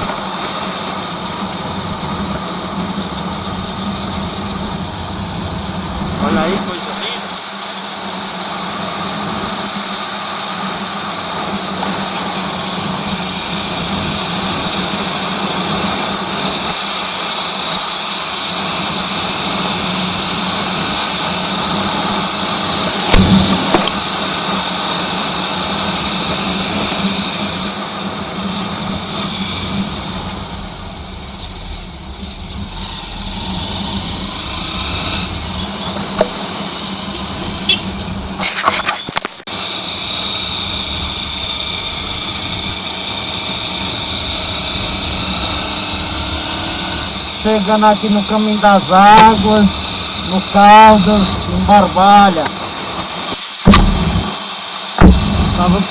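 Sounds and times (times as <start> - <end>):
rushing wind: 0.0 - 55.9
motorcycle engine running: 8.1 - 38.4, 53.7 - 54.4, 55.0 - 55.9
sharp knock: 23.1 - 24.1, 53.7 - 54.2, 55.0 - 55.6.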